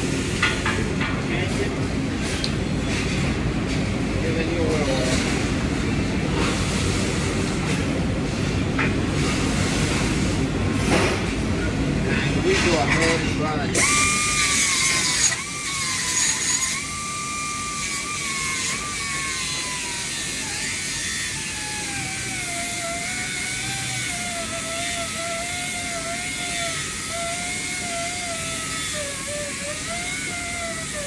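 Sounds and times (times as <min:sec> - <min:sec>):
grinder whining on metal: 0:11.6 - 0:31.0.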